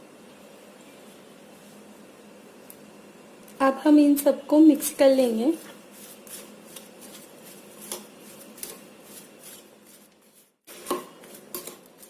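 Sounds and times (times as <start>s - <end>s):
spoon scraping and stirring in bowl: 5.0s - 12.0s.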